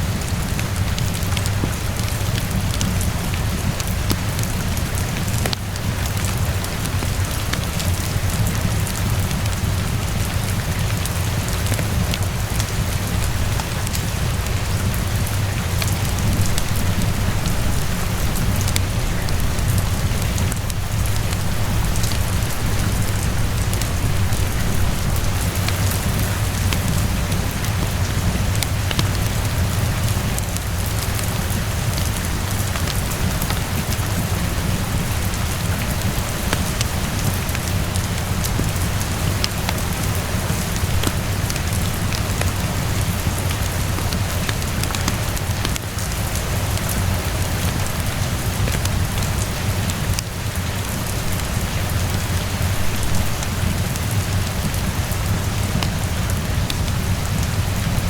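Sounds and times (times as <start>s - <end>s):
rain falling: 0.0s - 58.0s
wood fire crackling: 0.0s - 58.0s
deep low rumble: 13.0s - 28.8s.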